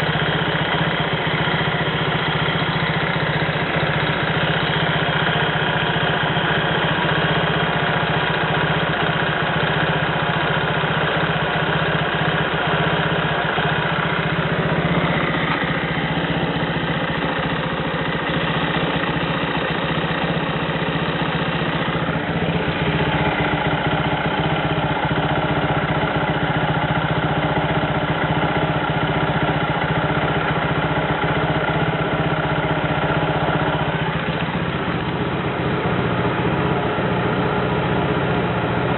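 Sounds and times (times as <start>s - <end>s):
scooter engine idling: 0.0s - 38.9s.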